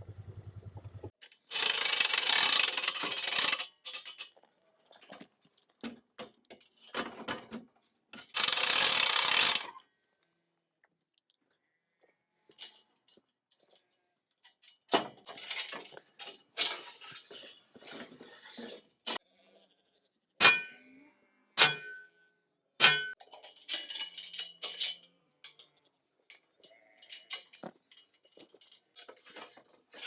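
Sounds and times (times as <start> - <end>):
loud ringing metal clanks: 20.4 - 20.8, 21.6 - 22.1, 22.8 - 23.2.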